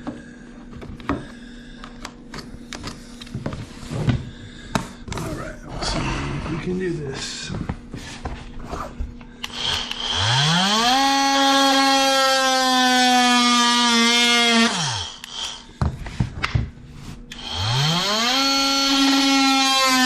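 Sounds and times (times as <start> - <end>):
oscillating multi-tool cutting wood: 9.4 - 15.7, 17.3 - 20.0.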